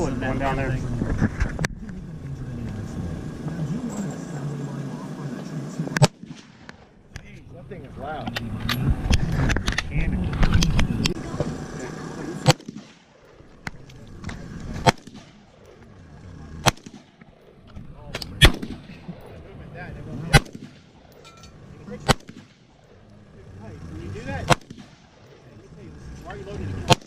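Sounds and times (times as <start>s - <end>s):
rifle shots: 6.0s - 7.0s, 12.4s - 15.9s, 16.5s - 19.4s, 20.3s - 21.2s, 21.8s - 23.0s, 24.4s - 25.5s, 26.8s - 27.0s.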